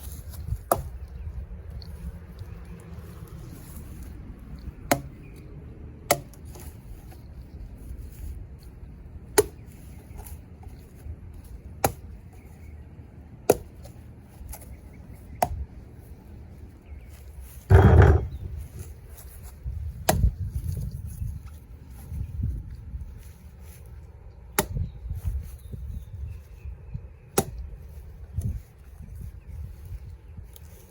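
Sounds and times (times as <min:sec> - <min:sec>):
heavy thud: 0:17.7 - 0:18.6
blade chopping into wood: 0:27.4 - 0:27.6.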